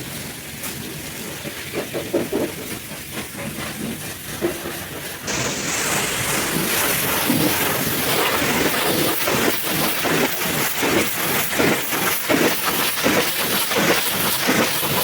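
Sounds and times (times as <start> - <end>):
pressure washer spraying water: 5.2 - 15.0.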